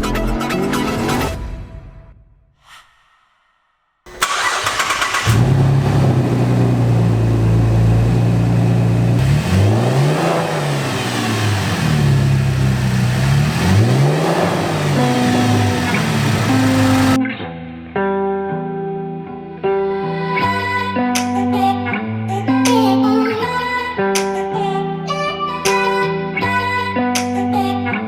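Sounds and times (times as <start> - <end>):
car engine idling: 4.1 - 17.2
car engine revving: 4.1 - 17.2
car engine starting: 4.1 - 17.2.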